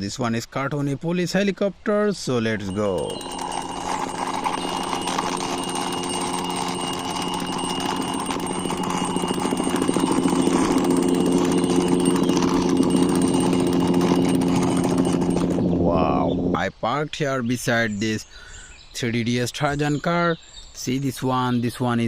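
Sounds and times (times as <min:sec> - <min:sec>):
toy wheels whirring rattle: 0:02.6 - 0:15.8
low hum: 0:02.6 - 0:16.6.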